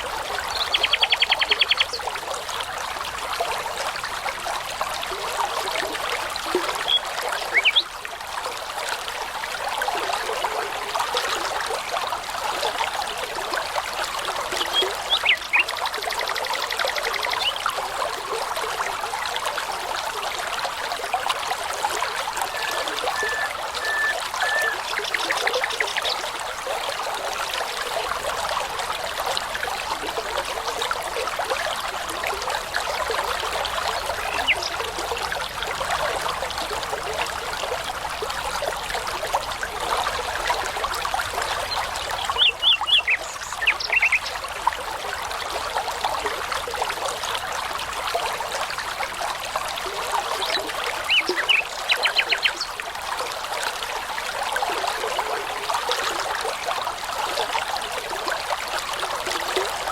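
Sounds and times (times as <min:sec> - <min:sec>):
brook babbling: 0:00.0 - 0:59.9
songbirds singing: 0:00.4 - 0:02.1, 0:06.7 - 0:07.9, 0:14.6 - 0:15.8, 0:22.4 - 0:26.4, 0:34.0 - 0:34.8, 0:41.6 - 0:44.4, 0:50.4 - 0:52.8.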